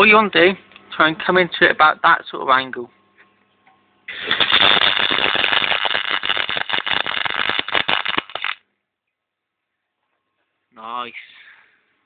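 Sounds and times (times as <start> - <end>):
welder arc crackling: 4.1 - 8.6.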